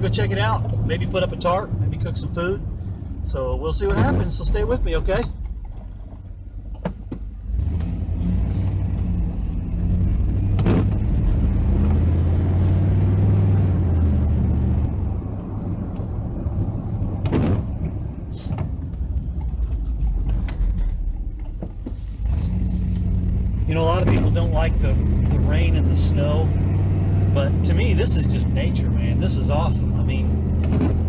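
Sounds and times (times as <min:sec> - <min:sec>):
car engine and road noise: 0:00.0 - 0:31.0.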